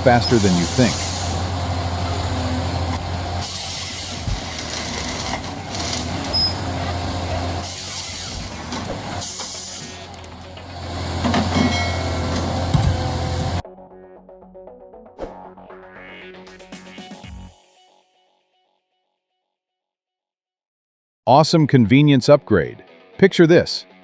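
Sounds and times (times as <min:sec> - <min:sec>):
bursts of hissing: 0:00.0 - 0:10.2
diesel engine running: 0:00.0 - 0:13.6.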